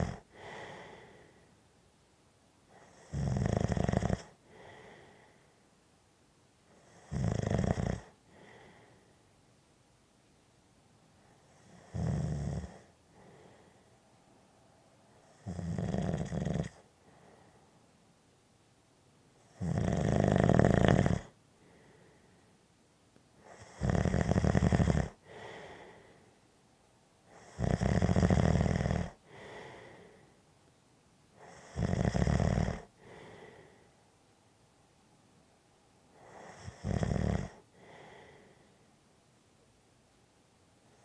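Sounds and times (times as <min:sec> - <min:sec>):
person snoring: 0:00.0 - 0:01.2, 0:02.8 - 0:05.2, 0:06.8 - 0:08.8, 0:11.5 - 0:13.7, 0:15.3 - 0:16.8, 0:19.5 - 0:21.9, 0:23.4 - 0:26.0, 0:27.4 - 0:30.2, 0:31.4 - 0:33.8, 0:36.2 - 0:38.6.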